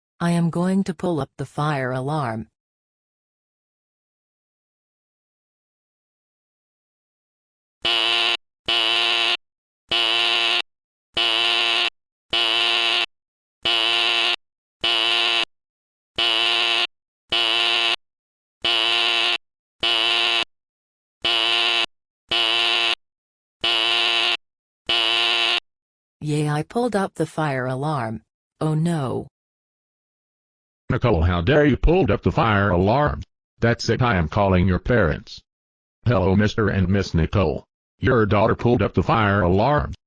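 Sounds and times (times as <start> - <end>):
buzzing fire alarm horn: 7.8 - 15.5, 16.2 - 18.0, 18.6 - 20.5, 21.2 - 23.0, 23.6 - 25.6.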